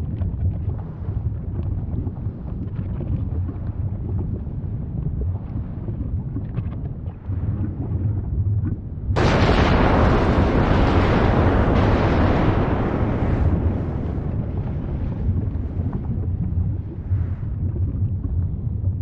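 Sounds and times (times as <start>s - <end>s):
volcano rumbling: 9.0s - 19.0s
faint crackles: 9.2s - 18.7s.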